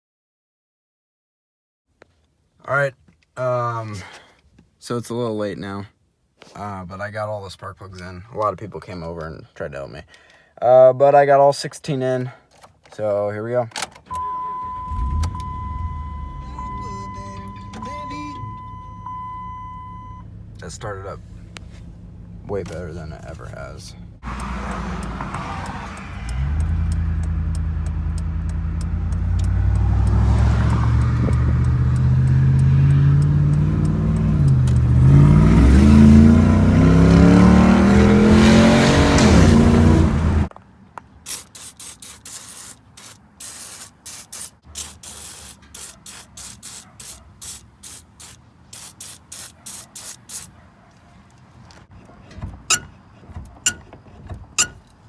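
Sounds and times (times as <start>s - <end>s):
car engine idling and revving: 14.2s - 40.5s.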